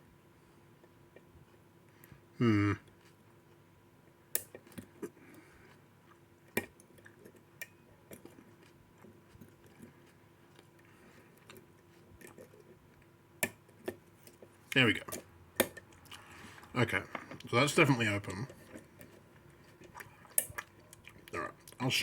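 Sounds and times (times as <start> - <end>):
person humming or grunting: 2.4 - 2.9.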